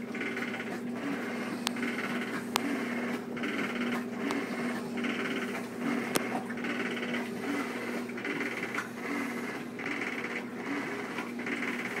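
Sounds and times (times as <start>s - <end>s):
washing machine motor hum: 0.0s - 12.0s
washing machine rattling grind: 0.0s - 12.0s.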